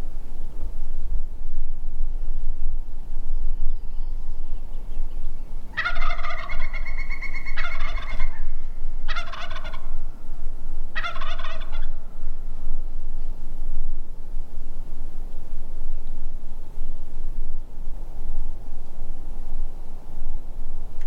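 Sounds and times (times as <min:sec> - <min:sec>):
turkey gobbling: 0:05.7 - 0:08.5, 0:09.1 - 0:10.0, 0:10.9 - 0:12.0.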